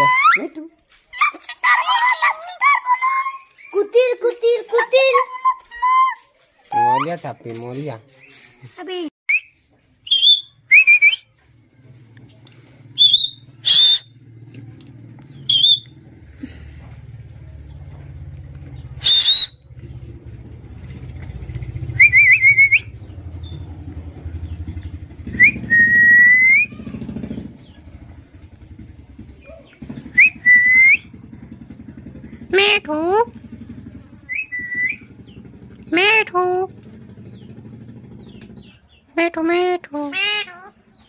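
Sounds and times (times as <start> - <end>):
parrot whistling: 9.3 - 11.3, 13.0 - 14.1, 15.5 - 15.9, 19.0 - 19.6, 22.0 - 22.9, 30.2 - 31.1, 34.3 - 35.1
low engine rumble: 9.6 - 41.0.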